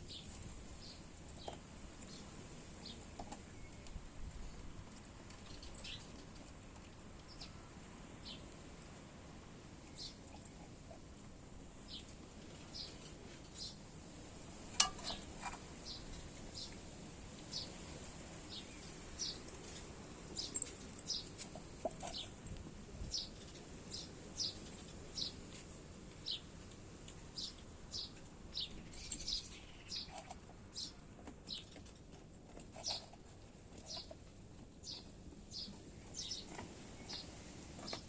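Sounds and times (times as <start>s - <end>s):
faint background hiss: 0.0s - 38.0s
bird chirping: 27.4s - 31.8s.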